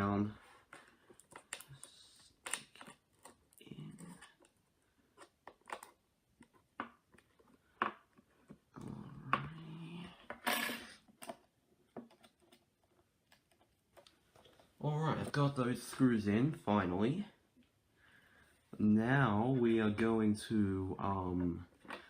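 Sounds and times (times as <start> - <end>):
low voice-like sounds: 8.7 - 10.3.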